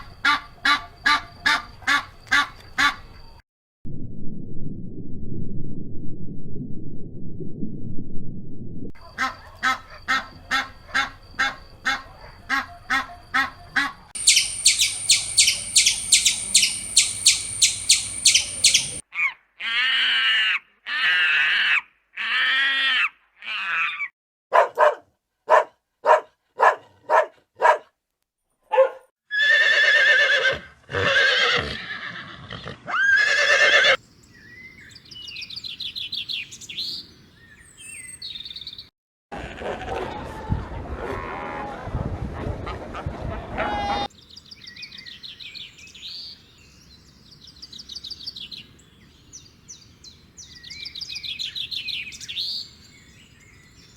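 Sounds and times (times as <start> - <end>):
animal chirps: 12.6 - 19.4
fast high-pitched chirping: 14.2 - 19.0
short pitched animal calls: 14.2 - 19.0.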